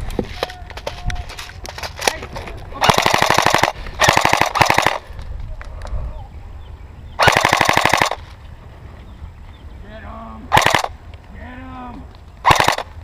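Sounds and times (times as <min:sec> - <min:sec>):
airsoft gun full-auto bursts: 0:02.8 - 0:05.0, 0:07.2 - 0:08.2, 0:10.5 - 0:10.9, 0:12.4 - 0:13.0.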